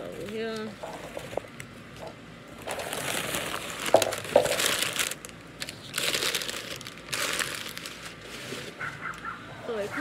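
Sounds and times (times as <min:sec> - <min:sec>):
bubble wrap crinkling and rustling: 0:02.6 - 0:08.8.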